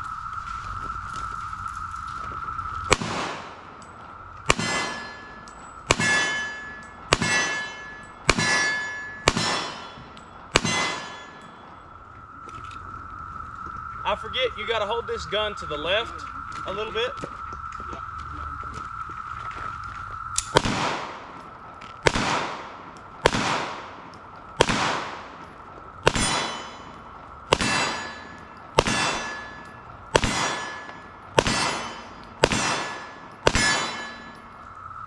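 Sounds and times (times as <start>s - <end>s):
pistol shots: 2.9s - 3.7s, 4.5s - 11.8s, 20.4s - 21.4s, 22.0s - 34.4s.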